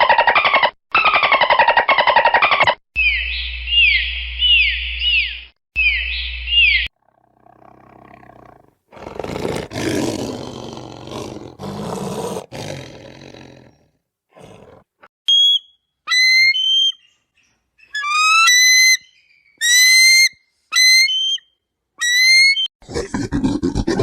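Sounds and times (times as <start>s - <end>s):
big cat roaring: 7.0s - 14.9s.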